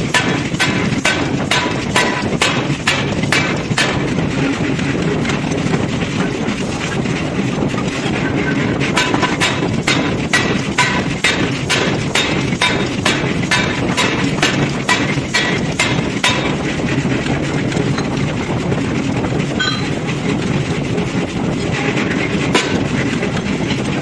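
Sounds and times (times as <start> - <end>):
low machinery rumble: 0.0 - 24.0
hammer striking hot steel: 0.1 - 4.0, 9.0 - 16.6, 19.6 - 20.1, 22.5 - 22.8.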